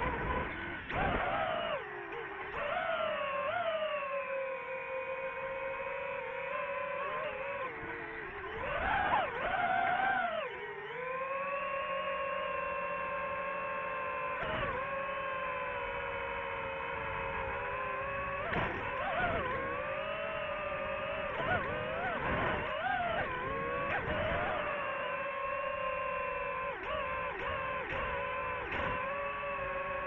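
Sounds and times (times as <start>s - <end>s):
drone propellers whining: 0.0s - 30.0s.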